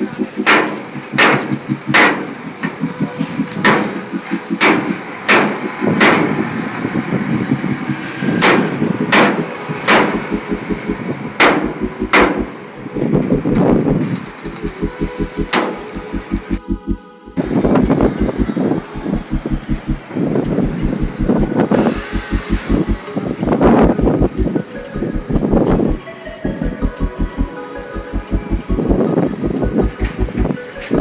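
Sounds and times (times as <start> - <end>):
hammer striking sheet metal: 0.0 - 6.8, 7.9 - 12.7, 13.6 - 16.5.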